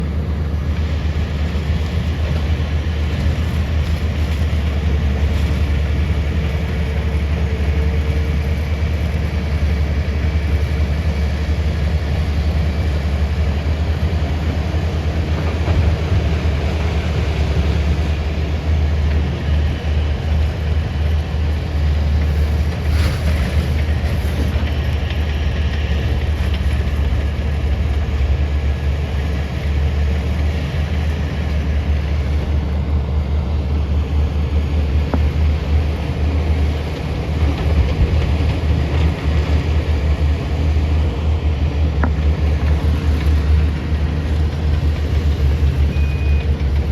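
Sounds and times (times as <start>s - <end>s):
excavator diesel engine rumbling: 0.0s - 46.9s.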